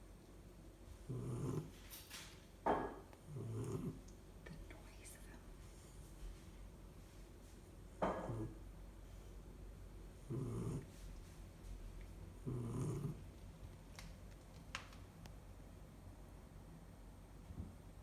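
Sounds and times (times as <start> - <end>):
puppy snoring: 0.9 - 1.9, 3.1 - 4.1, 8.0 - 8.7, 10.1 - 11.1, 12.3 - 13.4.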